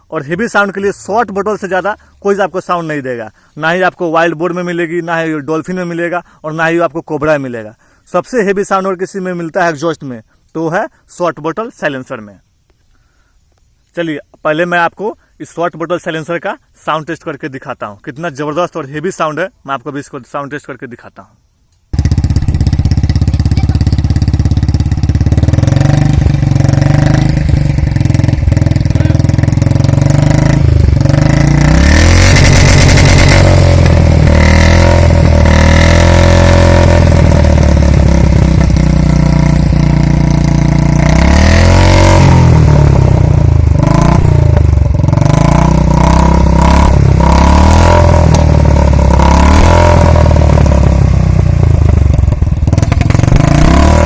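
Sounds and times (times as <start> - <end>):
motorcycle engine revving: 22.0 - 54.0.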